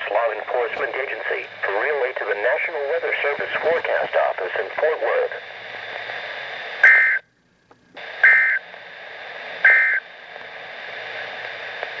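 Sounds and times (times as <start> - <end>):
radio hiss: 0.0 - 7.2, 7.8 - 12.0
two-tone digital data bursts: 6.8 - 7.2, 8.2 - 8.6, 9.6 - 10.0.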